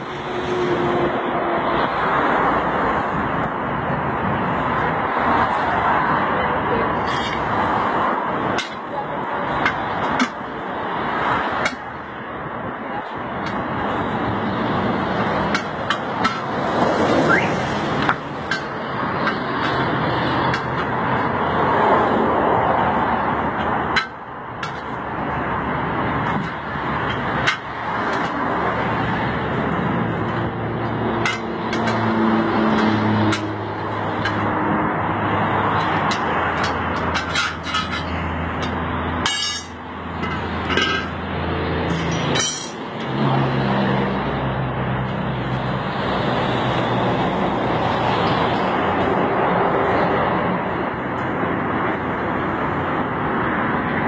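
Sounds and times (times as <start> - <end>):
steady background noise: 0.0 - 54.0
metal knocks and clanks: 35.8 - 41.2.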